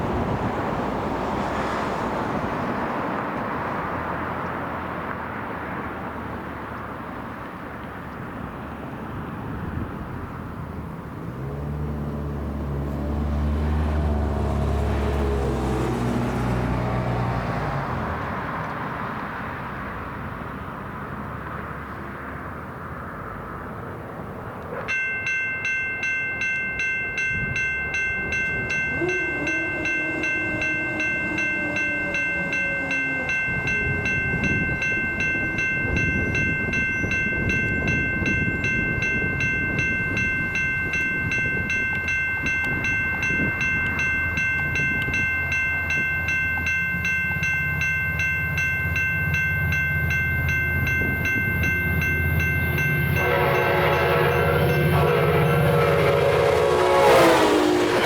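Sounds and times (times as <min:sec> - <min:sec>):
crossing warning bell ringing: 0:00.0 - 0:21.7, 0:24.8 - 0:58.0
train rumble: 0:00.0 - 0:21.8, 0:23.2 - 0:58.0
distant train horn: 0:27.4 - 0:36.0, 0:51.7 - 0:58.0.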